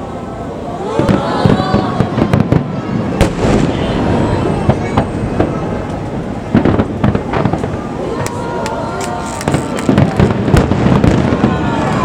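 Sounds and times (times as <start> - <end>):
firework crackle and rumble: 0.0 - 12.0
firework shells bursting: 4.7 - 11.4.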